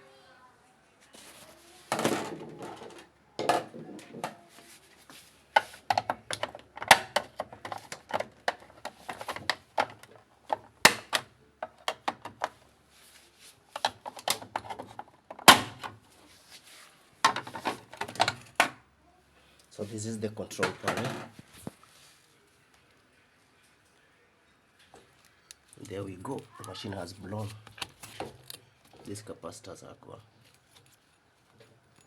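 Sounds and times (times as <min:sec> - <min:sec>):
plastic parts clicking and knocking: 0:05.6 - 0:12.6, 0:13.7 - 0:16.0, 0:17.2 - 0:18.8, 0:20.5 - 0:21.4, 0:27.5 - 0:29.1.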